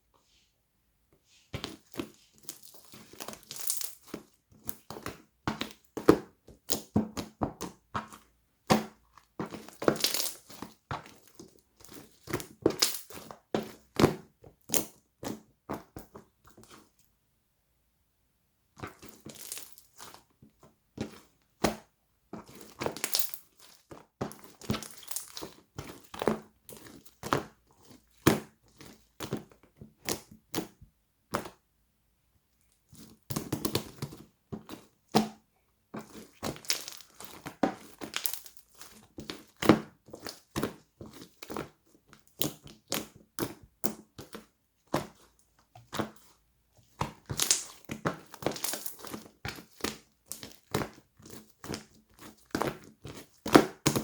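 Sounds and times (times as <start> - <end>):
slime squished by hand: 1.6 - 16.0, 18.8 - 20.2, 22.5 - 31.6, 36.0 - 54.0.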